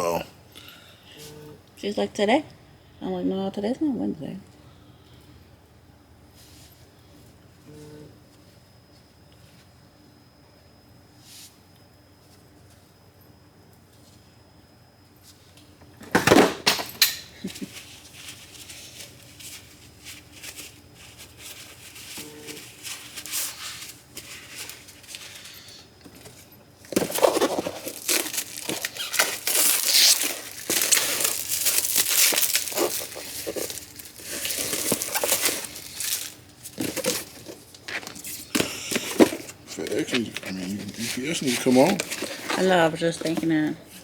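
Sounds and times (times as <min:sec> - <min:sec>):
crinkling rustling handling noise: 0:17.5 - 0:44.0.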